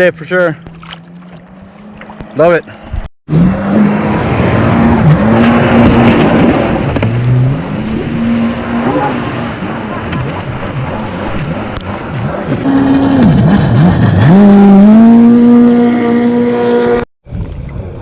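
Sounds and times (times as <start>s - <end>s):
wind and water rush: 0.0s - 15.8s
jet ski engine running: 3.6s - 17.0s.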